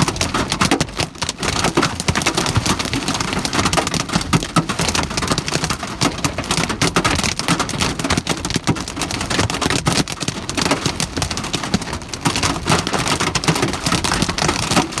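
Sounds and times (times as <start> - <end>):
hailstones clattering on hard surface: 0.0 - 15.0
rain rushing: 4.7 - 15.0.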